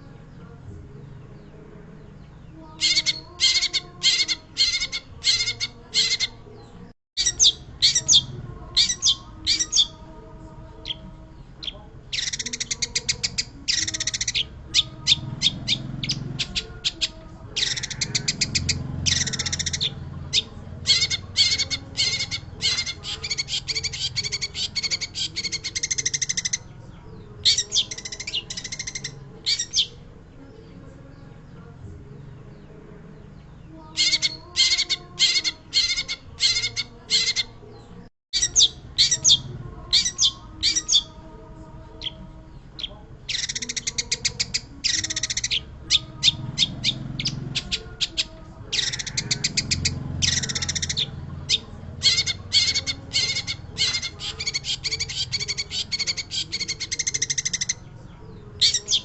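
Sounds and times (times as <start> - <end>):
bird singing harsh chattering trills: 1.2 - 31.6, 32.4 - 59.0.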